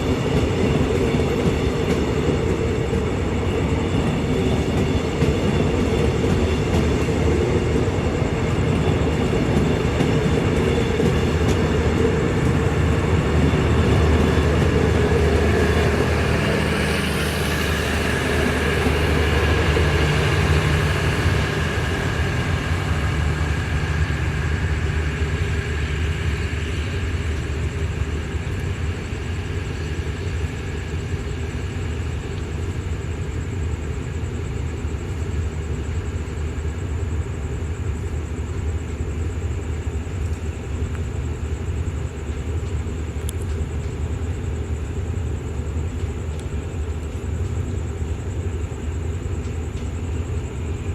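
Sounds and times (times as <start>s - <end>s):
diesel locomotive rumble: 0.0s - 50.9s
train wheels on rails: 0.0s - 50.9s.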